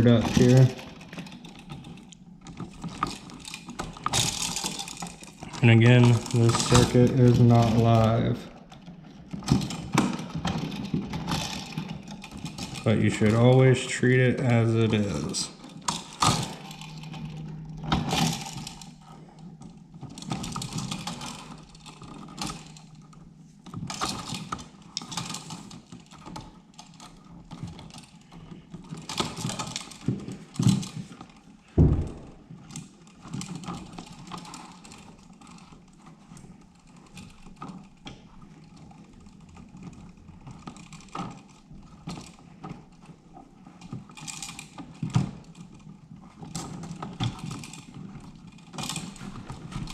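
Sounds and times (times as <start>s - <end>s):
sharp knock: 31.8s - 32.4s.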